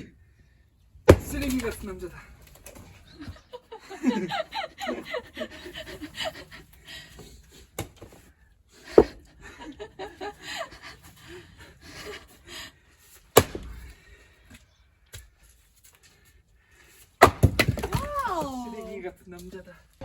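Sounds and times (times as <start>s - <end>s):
person laughing: 3.2s - 6.5s.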